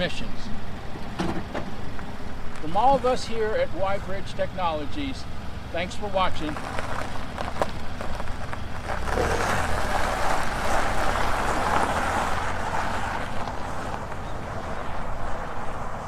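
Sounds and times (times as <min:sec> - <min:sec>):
motor vehicle running: 0:00.0 - 0:16.0.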